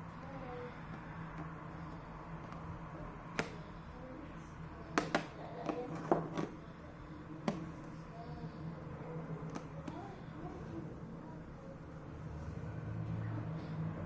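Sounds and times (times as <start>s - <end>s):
steady low hum: 0.0s - 14.0s
phone being handled clicks and taps: 3.3s - 3.7s, 4.9s - 6.5s.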